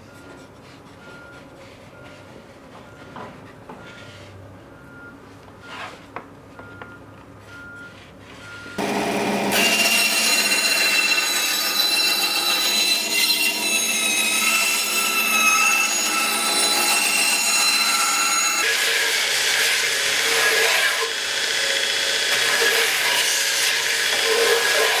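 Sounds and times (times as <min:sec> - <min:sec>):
power tool cutting wood: 0:08.8 - 0:25.0.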